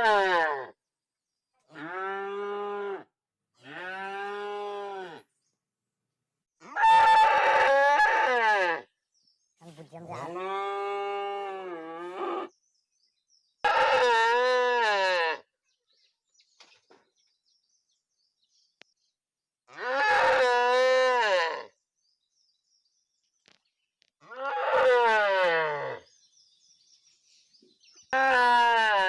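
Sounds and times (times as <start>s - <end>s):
cow mooing: 1.7s - 5.3s, 13.6s - 15.4s, 19.7s - 21.7s, 24.2s - 26.0s, 28.1s - 29.0s.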